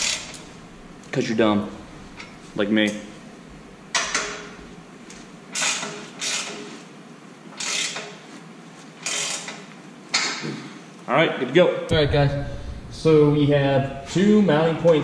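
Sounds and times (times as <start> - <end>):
hand ratchet tightening bolt: 5.5 - 6.7, 7.6 - 8.2, 9.0 - 9.6.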